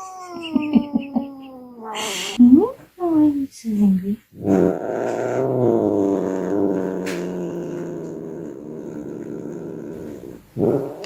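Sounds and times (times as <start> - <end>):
cat crying: 0.0 - 2.4
cat growling: 0.0 - 2.8, 4.3 - 11.0.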